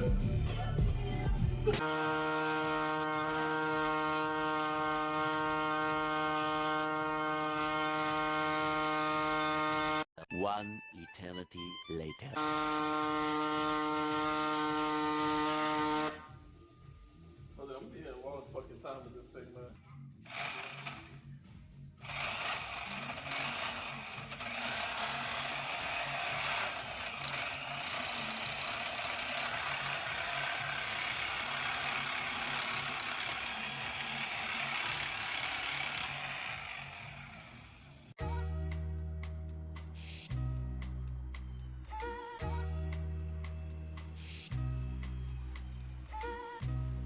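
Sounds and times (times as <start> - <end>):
tool rasping hiss: 1.8 - 10.1, 12.4 - 21.2, 22.0 - 38.2.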